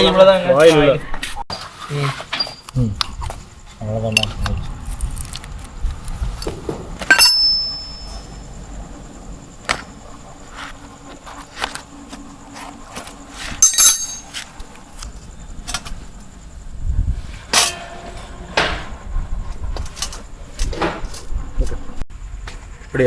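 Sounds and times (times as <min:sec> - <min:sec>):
metal tools clinking and knocking: 0:07.1 - 0:08.4, 0:13.6 - 0:14.5, 0:17.5 - 0:19.0
ringing metallic clink: 0:07.1 - 0:08.5, 0:13.6 - 0:14.4, 0:17.6 - 0:19.0.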